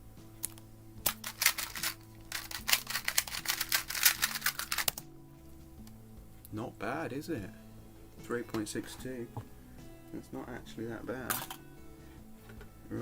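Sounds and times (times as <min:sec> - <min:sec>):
quiet background music: 0:00.0 - 0:13.0
plastic cube clicking: 0:00.4 - 0:05.0.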